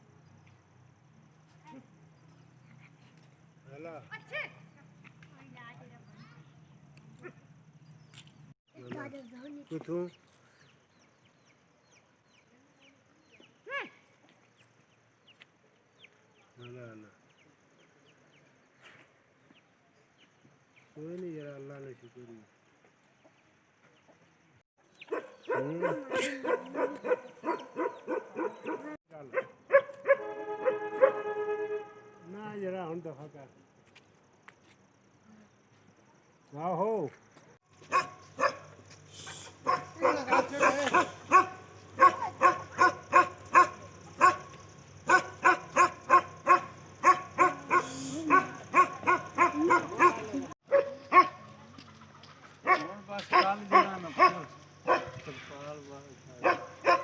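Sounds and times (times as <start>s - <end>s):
dog barking rapidly: 25.1s - 31.2s, 37.8s - 38.8s, 39.5s - 51.4s, 52.6s - 55.2s, 56.4s - 57.0s.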